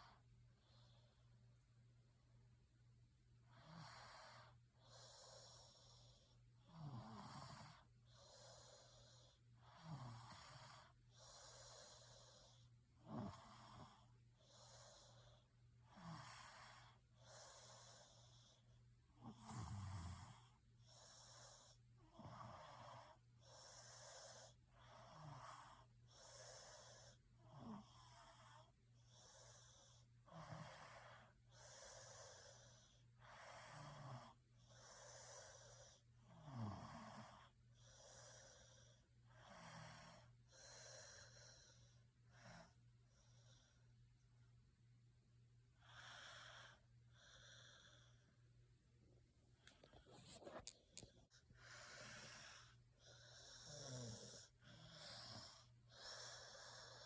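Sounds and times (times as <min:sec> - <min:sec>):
person snoring: 0:03.5 - 0:18.6, 0:19.2 - 0:42.8, 0:49.6 - 0:57.0.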